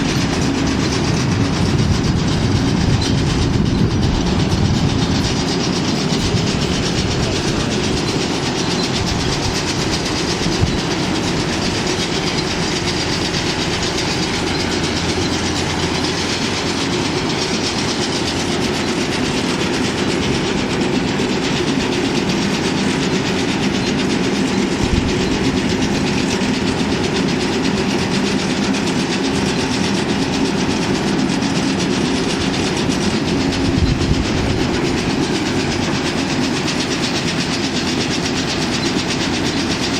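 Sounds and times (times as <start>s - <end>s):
baler clatter and rattle: 0.0s - 39.9s
engine hum: 0.0s - 39.9s.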